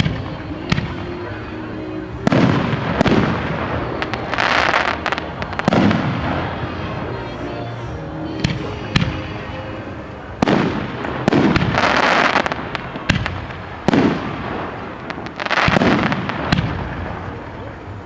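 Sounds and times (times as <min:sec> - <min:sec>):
crackling firework showers: 0:00.0 - 0:18.0
firework bursts: 0:02.1 - 0:17.9.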